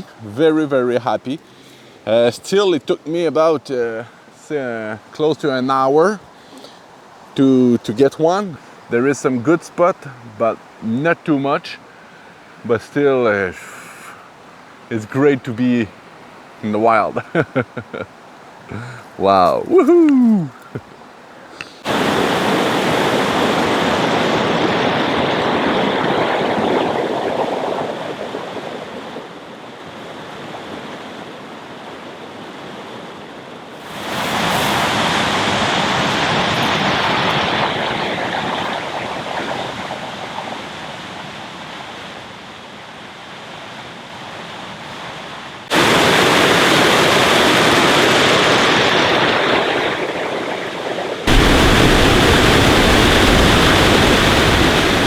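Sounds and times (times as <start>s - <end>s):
waterfall rushing: 18.7s - 20.8s, 21.5s - 26.2s, 33.8s - 41.3s, 45.7s - 55.0s.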